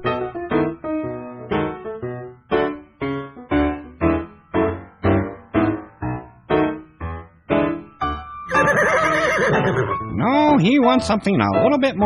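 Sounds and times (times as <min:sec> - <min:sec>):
piano playing bouncing chords: 0:00.0 - 0:10.7
horse whinnying: 0:08.5 - 0:10.0.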